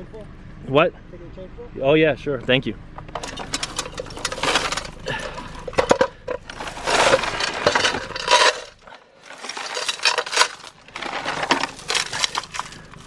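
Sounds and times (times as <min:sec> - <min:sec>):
metal chain clinking and rattling: 0:03.1 - 0:13.0.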